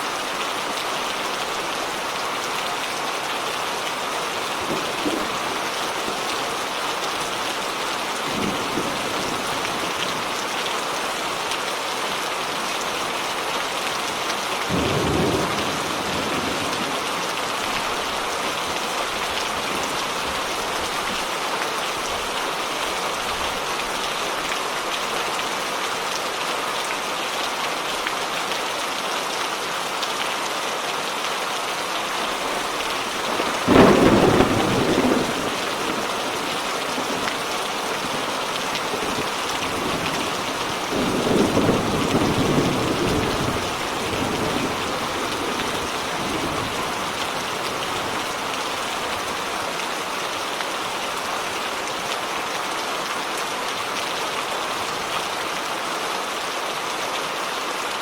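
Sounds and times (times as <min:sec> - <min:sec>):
steady rain falling: 0:00.0 - 0:58.0
thunder rumbling: 0:04.5 - 0:07.4, 0:08.3 - 0:10.4, 0:32.3 - 0:49.4.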